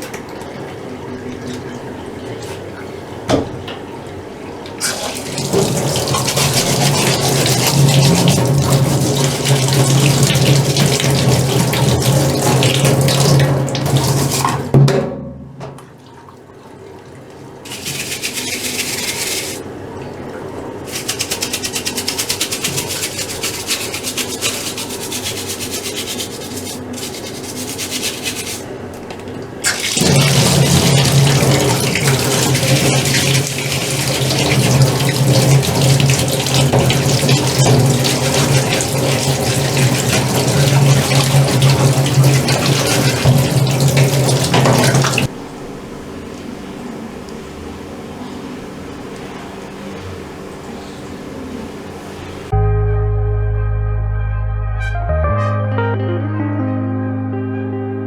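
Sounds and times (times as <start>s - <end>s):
water running hard: 4.7s - 14.8s, 17.6s - 45.4s
even rhythmic sound: 52.5s - 58.0s
low hum: 52.5s - 58.0s.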